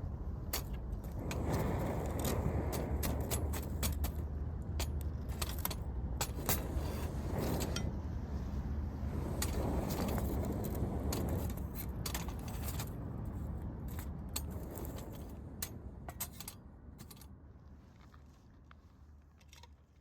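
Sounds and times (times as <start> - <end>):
low steady rumble: 0.0 - 20.0
campfire crackling and popping: 0.5 - 8.0, 9.0 - 13.2.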